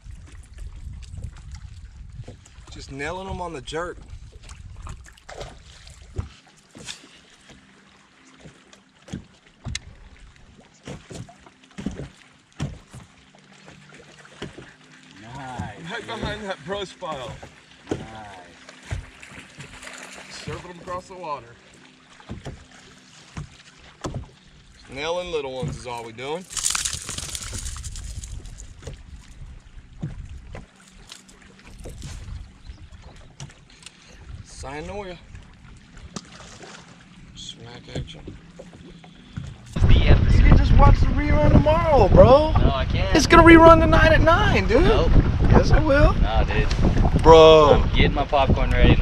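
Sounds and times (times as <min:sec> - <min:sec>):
wind rumbling on microphone: 0:00.0 - 0:06.4, 0:25.7 - 0:30.7, 0:31.8 - 0:33.5, 0:39.4 - 0:49.0
water against a boat: 0:00.0 - 0:49.0.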